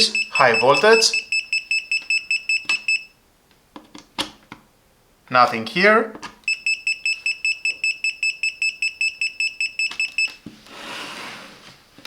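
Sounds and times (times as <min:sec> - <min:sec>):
multimeter alarm beeping: 0:00.0 - 0:03.2, 0:06.5 - 0:10.4.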